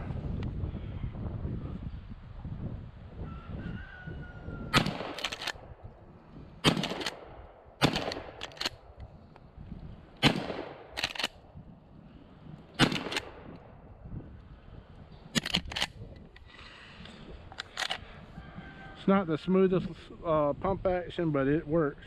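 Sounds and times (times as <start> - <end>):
shotgun shots: 4.7 - 5.6, 6.6 - 8.9, 10.2 - 11.3, 12.8 - 13.6
shotgun slide racking: 5.2 - 5.6, 8.0 - 8.8, 11.0 - 11.4, 15.4 - 16.0, 17.5 - 18.0.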